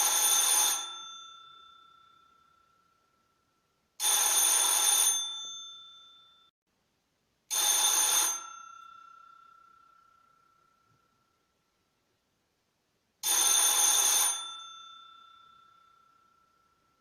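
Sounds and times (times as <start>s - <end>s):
doorbell ringing: 0.0s - 2.5s, 4.0s - 6.5s, 7.5s - 10.6s, 13.2s - 16.8s.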